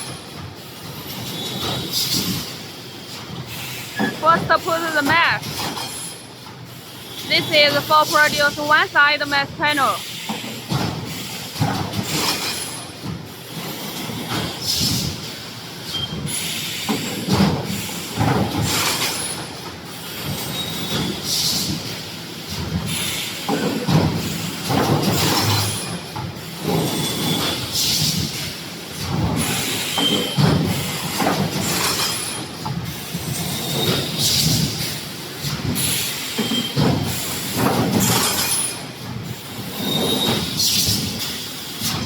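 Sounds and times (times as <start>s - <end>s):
welding machine clanking and squealing: 0.0s - 4.8s, 5.4s - 7.7s, 10.0s - 42.0s.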